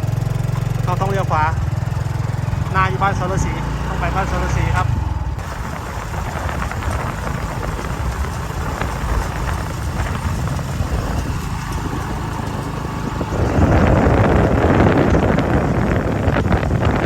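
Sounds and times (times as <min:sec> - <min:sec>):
road and air noise: 0:00.0 - 0:17.0
vehicle engine running: 0:00.0 - 0:17.0.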